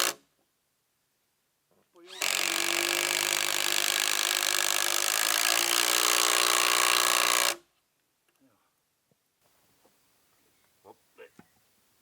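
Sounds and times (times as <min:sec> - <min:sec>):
power saw cutting wood: 0:00.0 - 0:00.2, 0:02.1 - 0:07.6.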